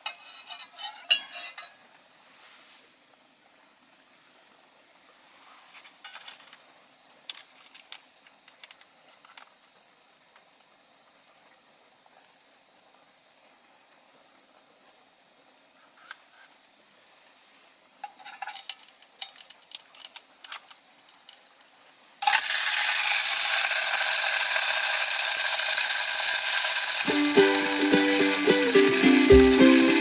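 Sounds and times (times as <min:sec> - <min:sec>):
food sizzling in a hot pan: 0:22.2 - 0:30.0
plucked music: 0:27.0 - 0:30.0.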